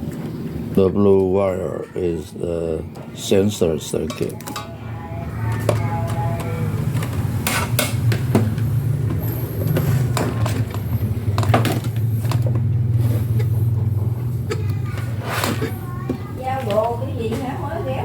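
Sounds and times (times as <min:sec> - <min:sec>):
low engine hum: 0:04.8 - 0:15.2.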